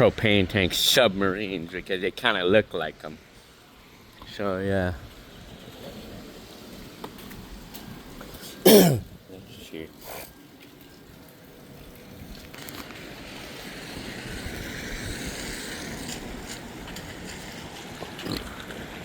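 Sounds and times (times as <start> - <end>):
tyres hissing on wet road: 2.3 - 9.0, 12.0 - 19.0.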